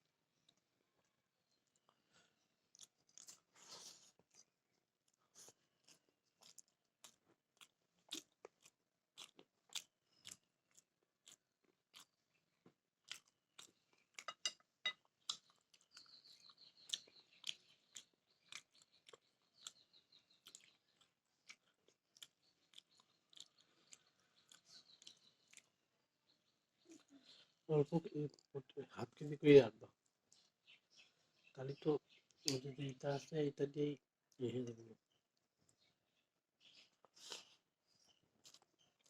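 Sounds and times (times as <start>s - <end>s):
person chewing: 1.7s - 12.2s, 13.0s - 25.8s, 37.0s - 37.6s, 38.4s - 39.0s.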